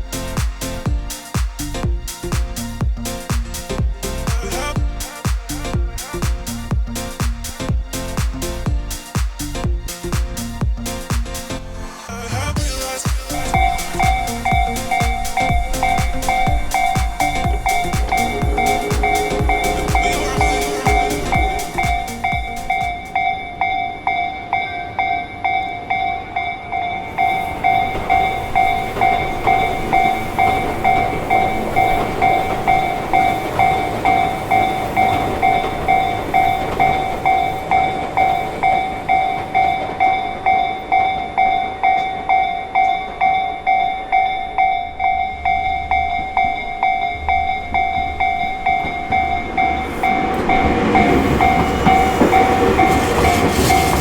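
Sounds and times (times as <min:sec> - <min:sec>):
train rumble: 0:00.0 - 0:54.0
level crossing warning bell: 0:13.6 - 0:54.0.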